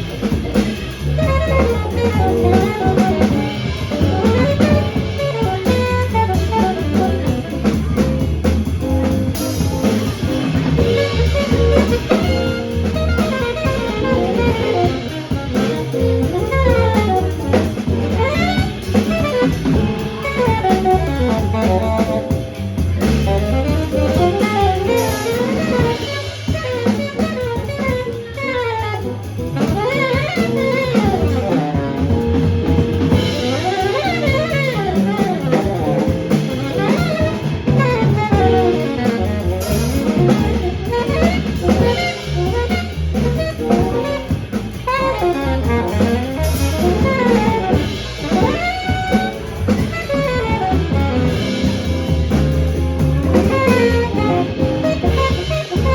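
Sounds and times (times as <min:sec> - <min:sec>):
bass: 0:00.0 - 0:55.9
drum kit: 0:00.0 - 0:55.9
piano: 0:00.0 - 0:55.9
saxophone: 0:00.0 - 0:55.9.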